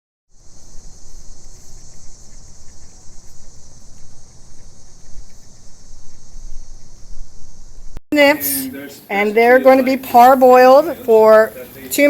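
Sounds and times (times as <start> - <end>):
cicadas droning: 0.3 - 12.0
low rumble: 0.4 - 8.0.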